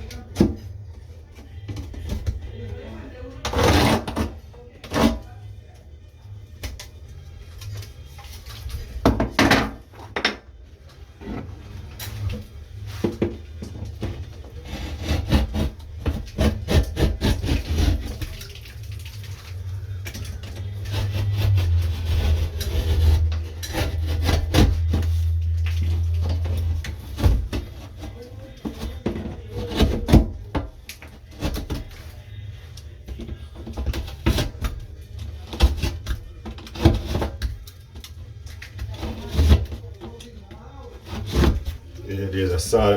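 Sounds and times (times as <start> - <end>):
drywall scraping and knocks: 3.4 - 5.3, 11.2 - 18.4, 20.4 - 32.1, 33.1 - 37.6, 38.8 - 40.2, 40.9 - 41.9.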